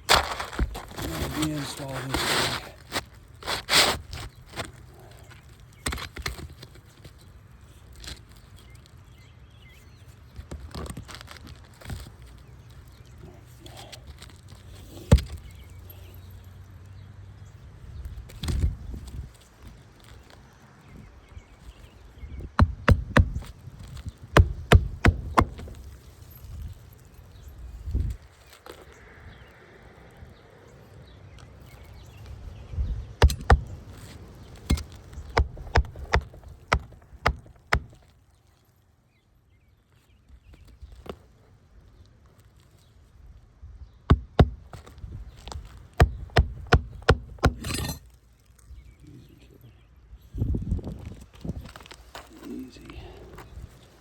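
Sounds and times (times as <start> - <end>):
scraping rustle: 0.0 - 9.1, 44.7 - 49.0
hatchet striking nails: 22.6 - 23.5, 24.3 - 25.9, 33.2 - 33.8, 34.6 - 38.0, 44.1 - 44.8, 45.6 - 48.0.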